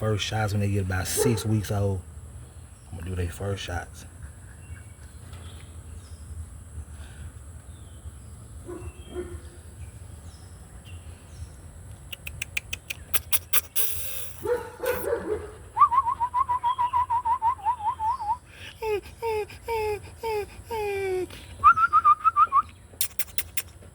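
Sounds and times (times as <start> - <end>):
puppies whimpering and yelping: 15.8 - 21.7.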